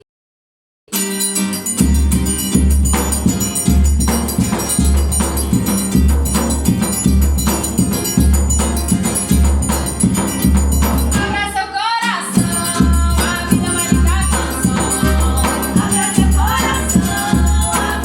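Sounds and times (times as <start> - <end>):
low drum beat: 2.6 - 11.4, 12.4 - 18.0
accordion melody: 12.4 - 18.0.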